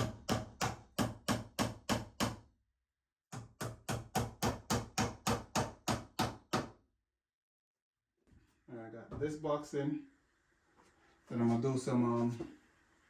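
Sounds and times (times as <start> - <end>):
hammer driving nails into wood: 0.0 - 2.4, 3.3 - 6.8.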